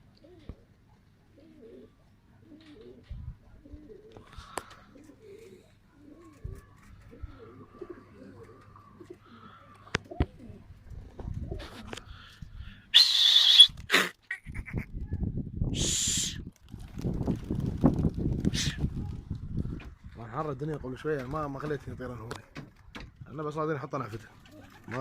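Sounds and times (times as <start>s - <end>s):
pigeons cooing: 0.0s - 14.8s, 24.3s - 25.0s.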